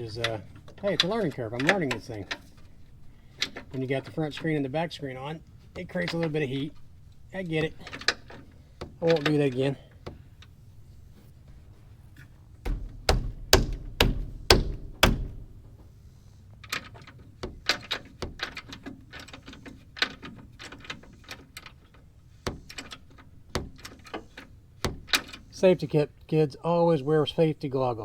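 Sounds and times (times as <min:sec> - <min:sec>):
sharp knocks on bumper: 0:12.6 - 0:15.8.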